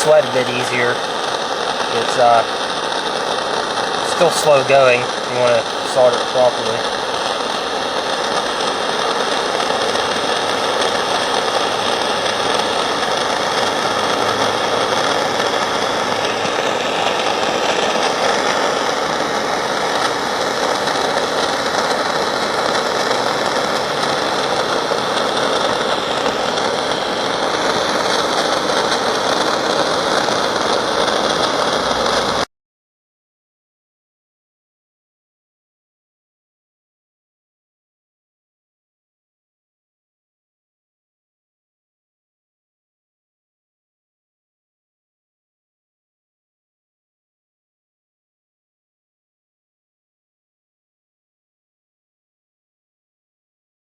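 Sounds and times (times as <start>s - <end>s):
gas torch hissing: 0.0s - 32.5s.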